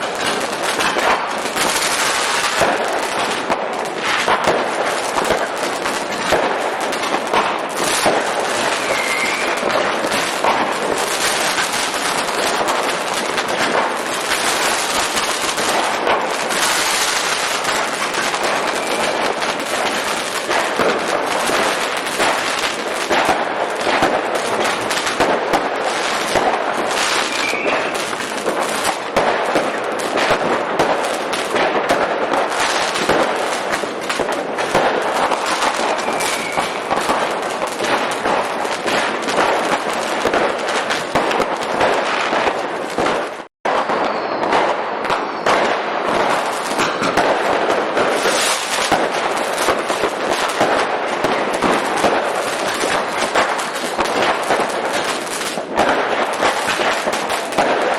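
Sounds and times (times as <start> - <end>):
firecracker barrage: 0.0 - 57.9.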